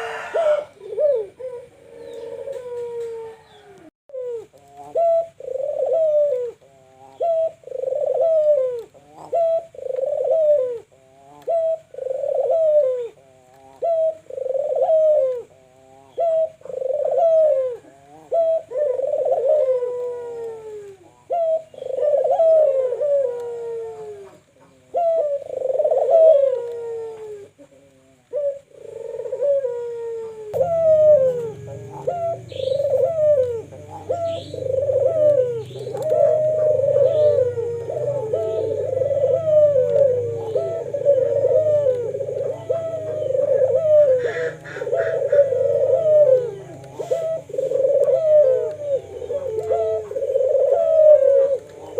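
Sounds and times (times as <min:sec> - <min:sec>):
doves cooing: 0:00.0 - 0:51.9
low hum: 0:30.4 - 0:50.6.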